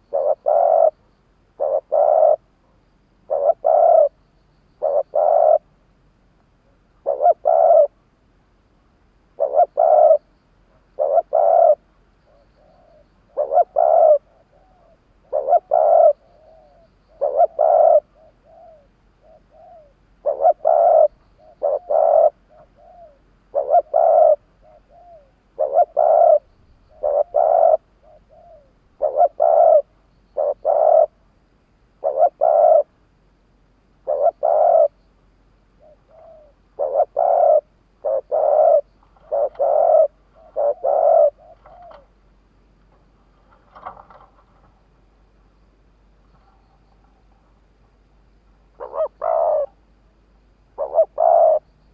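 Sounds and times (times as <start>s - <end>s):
dove cooing: 0.0s - 5.8s, 6.6s - 8.0s, 9.3s - 31.2s, 32.0s - 33.0s, 34.0s - 35.0s, 35.8s - 42.2s, 43.3s - 44.8s, 48.7s - 49.8s, 50.8s - 51.7s.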